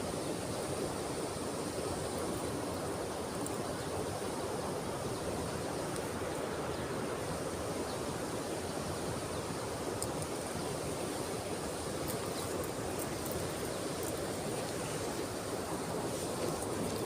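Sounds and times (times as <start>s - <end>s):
stream flowing: 0.0s - 17.0s
faint ticks: 10.0s - 10.3s.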